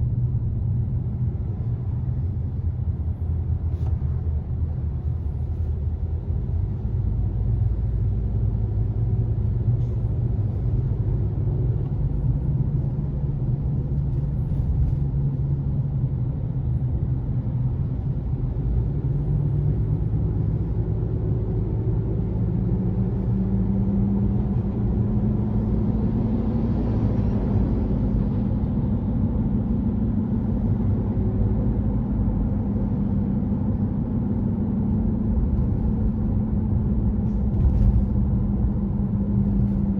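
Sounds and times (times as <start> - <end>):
loud low wheel hum: 0.0 - 39.9
road rumble: 0.0 - 39.9.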